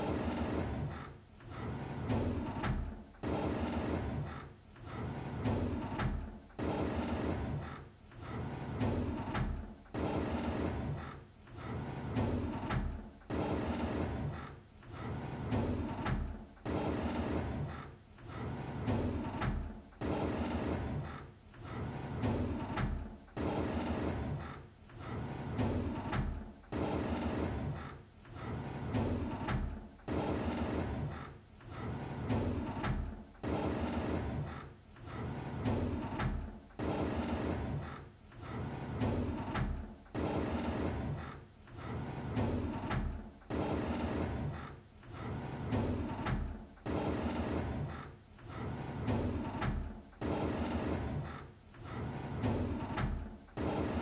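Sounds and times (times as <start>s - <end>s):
drawer sliding open: 28.4s - 54.0s.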